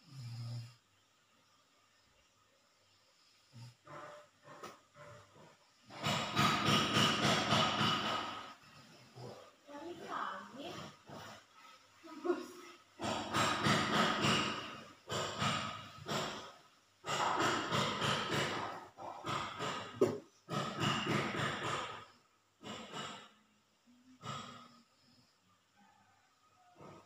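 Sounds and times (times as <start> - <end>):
person snoring deeply: 0.0 - 0.8.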